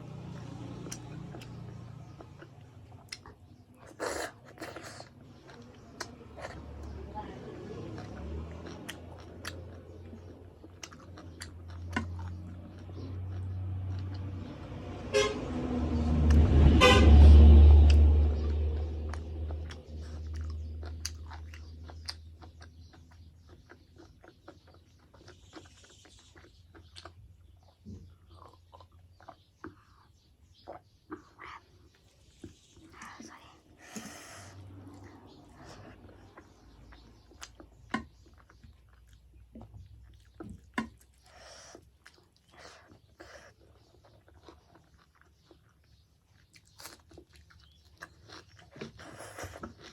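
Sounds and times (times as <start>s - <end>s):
person chewing food: 0.0s - 7.0s, 7.6s - 49.9s
deep engine rumble: 0.0s - 46.0s
vehicle horn toots: 15.1s - 15.8s, 16.7s - 17.5s.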